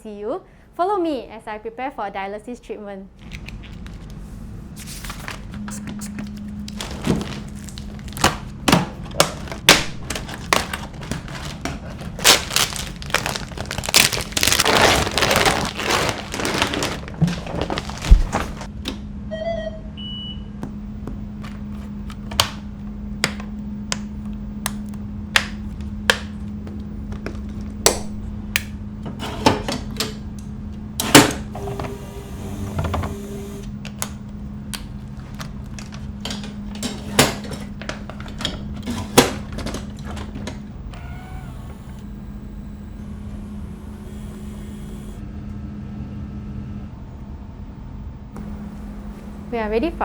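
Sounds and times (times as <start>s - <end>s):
low machine hum: 0.0s - 50.0s.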